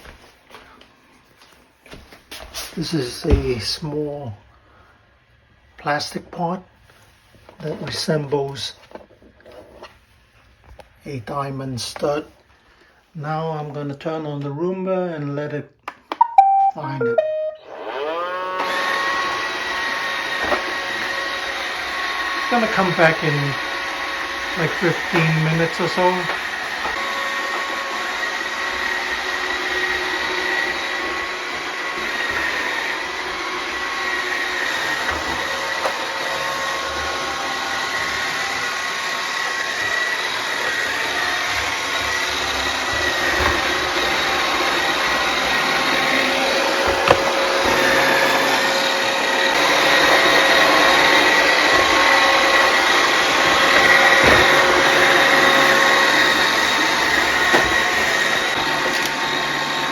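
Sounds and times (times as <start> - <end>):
robot vacuum whirring: 17.6 - 59.9.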